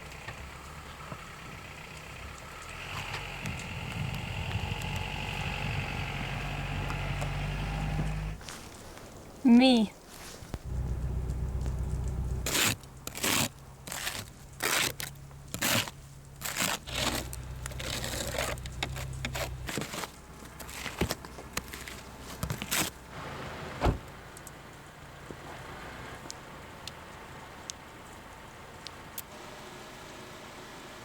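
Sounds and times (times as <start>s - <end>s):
low hum: 10.5s - 12.6s
brush scraping snow off car: 12.2s - 23.0s.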